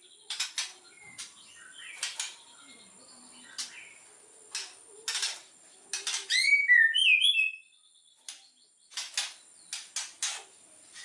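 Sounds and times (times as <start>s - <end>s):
bird whistled notes: 6.3s - 7.7s.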